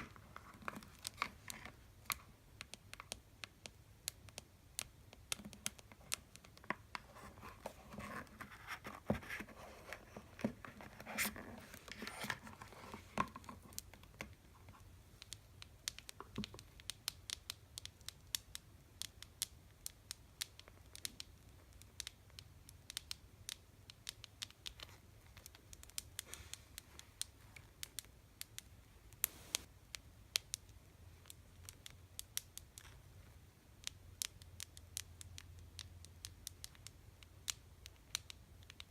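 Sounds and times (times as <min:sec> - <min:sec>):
scratching and rubbing on boxes: 0:07.0 - 0:13.6.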